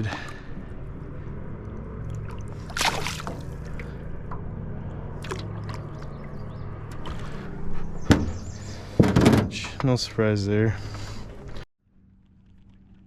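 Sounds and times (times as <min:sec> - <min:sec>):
water lapping at hull: 0:00.0 - 0:04.2, 0:05.1 - 0:07.5.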